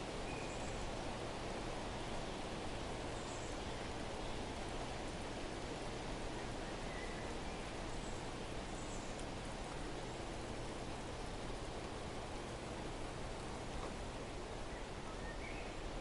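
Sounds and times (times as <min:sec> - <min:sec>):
outdoor background hiss: 0:00.0 - 0:16.0
faint bird chirps: 0:00.2 - 0:00.9, 0:06.4 - 0:09.2, 0:14.6 - 0:15.8.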